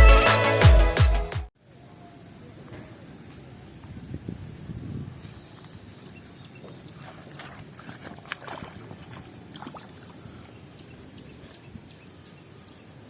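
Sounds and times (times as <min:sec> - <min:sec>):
water sloshing and splashing: 0:06.6 - 0:10.5.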